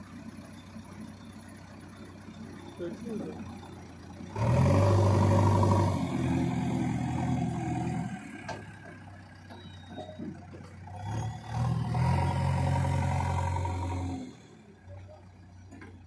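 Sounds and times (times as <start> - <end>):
heavy diesel engine running: 0.0 - 16.0.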